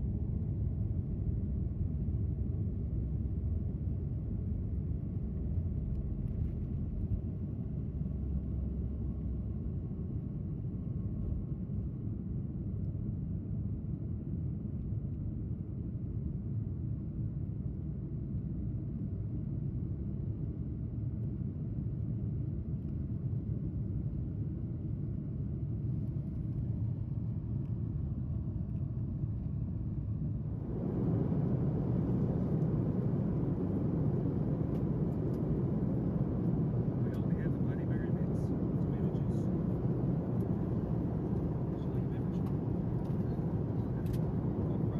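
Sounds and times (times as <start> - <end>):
airliner cabin rumble: 23.0 - 44.9.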